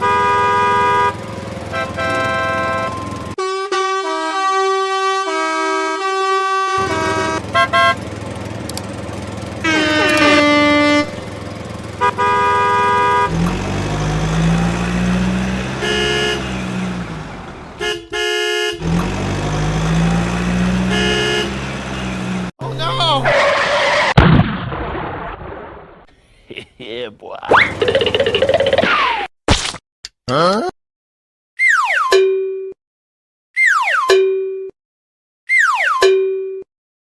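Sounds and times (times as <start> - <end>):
low engine rumble revving: 0.0 - 3.4, 6.8 - 22.6
cartoon horn toots: 0.0 - 8.0, 9.6 - 11.3, 12.0 - 13.4, 15.2 - 16.8, 17.8 - 19.0, 20.6 - 22.2.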